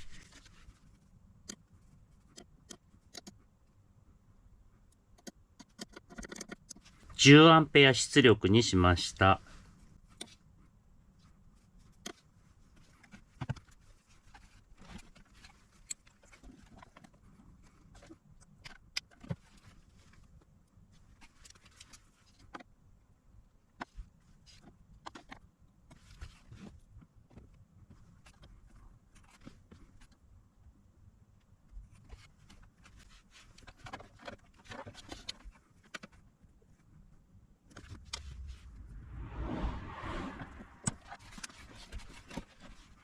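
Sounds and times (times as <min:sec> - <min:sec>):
low hum: 0:37.8 - 0:41.6.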